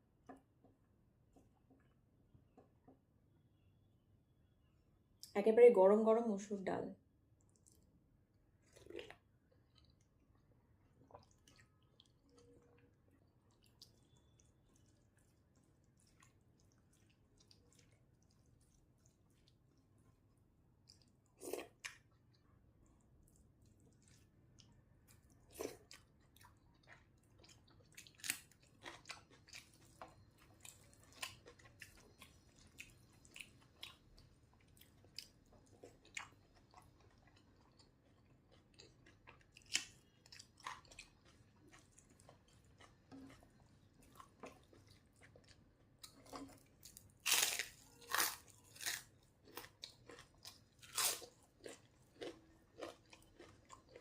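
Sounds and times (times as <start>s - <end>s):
person chewing: 7.4s - 7.9s, 8.6s - 10.1s, 11.0s - 20.1s, 20.8s - 54.0s
crunchy bites: 47.2s - 54.0s.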